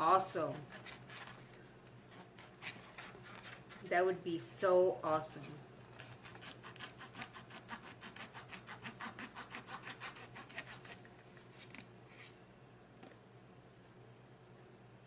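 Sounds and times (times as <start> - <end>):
utensil sawing at food: 0.1 - 1.4, 2.1 - 3.9, 5.9 - 11.0.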